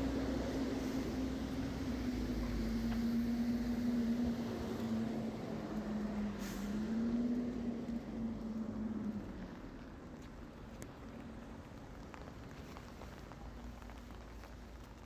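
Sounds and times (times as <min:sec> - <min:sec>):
steady rain falling: 0:00.0 - 0:15.0
brief hiss: 0:06.4 - 0:06.8.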